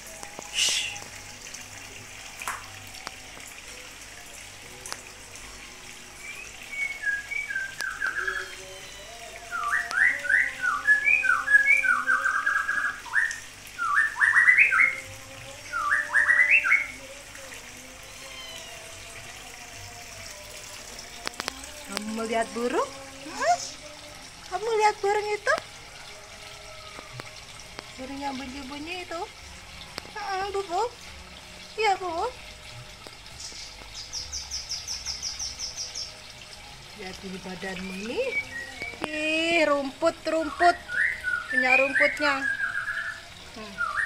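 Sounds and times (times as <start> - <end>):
songbird chirping: 6.2 - 15.0, 37.6 - 44.0.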